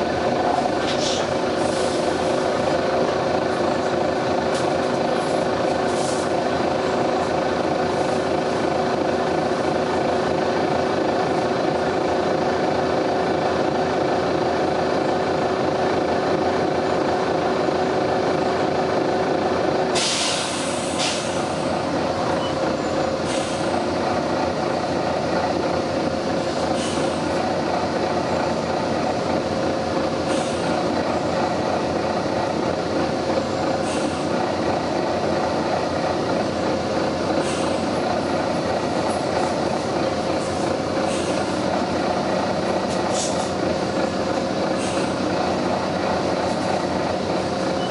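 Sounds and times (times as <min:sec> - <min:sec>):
bus engine droning: 0:00.0 - 0:47.9
air brake hiss: 0:06.0 - 0:06.3, 0:20.0 - 0:21.5, 0:23.2 - 0:23.7, 0:26.8 - 0:27.2, 0:33.8 - 0:34.3, 0:37.4 - 0:37.8, 0:41.1 - 0:41.6, 0:43.1 - 0:43.5, 0:44.8 - 0:45.2.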